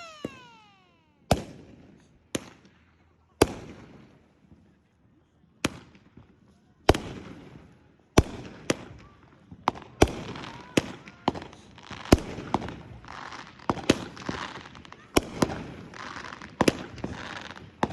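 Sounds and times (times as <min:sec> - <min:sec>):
firework crackling: 0:00.0 - 0:01.4
firework bangs: 0:00.0 - 0:01.8.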